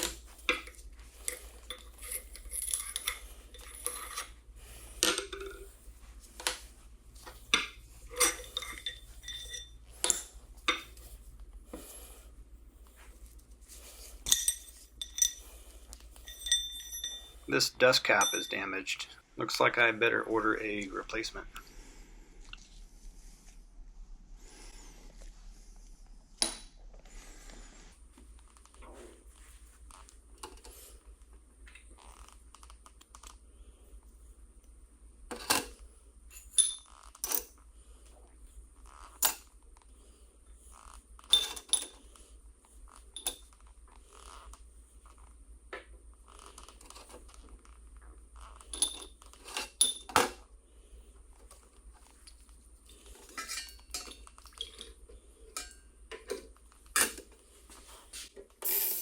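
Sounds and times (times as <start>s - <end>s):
small metal parts clinking: 0.0s - 4.3s, 7.5s - 10.8s, 14.2s - 18.7s, 36.3s - 37.5s, 40.8s - 42.0s, 48.6s - 50.3s, 58.6s - 59.0s.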